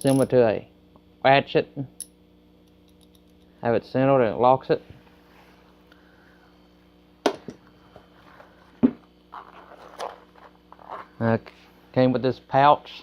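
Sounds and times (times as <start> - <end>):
tools clicking and knocking: 0.0 - 0.3.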